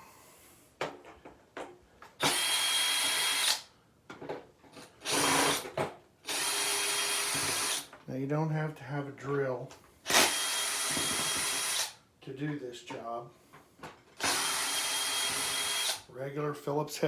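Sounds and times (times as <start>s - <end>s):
power drill-driver running: 2.2s - 3.6s, 5.0s - 5.6s, 6.3s - 7.9s, 10.1s - 12.0s, 14.2s - 16.0s.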